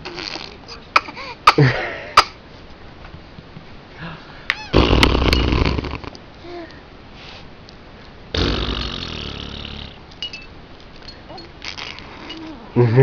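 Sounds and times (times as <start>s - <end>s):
mouth-made raspberry: 11.3s - 13.0s.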